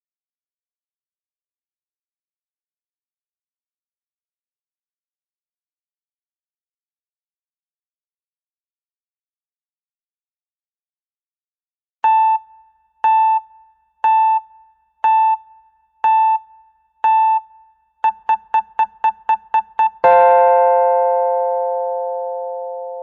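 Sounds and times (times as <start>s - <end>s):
timer electronic beeps: 12.0s - 20.4s
three-note chord tone: 20.0s - 23.0s.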